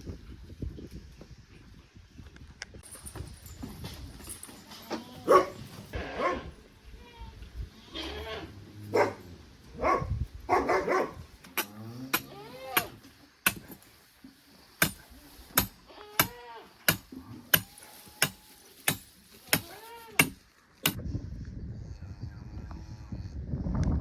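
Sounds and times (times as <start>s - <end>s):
dog barking and yipping: 5.1s - 6.6s, 8.9s - 11.5s.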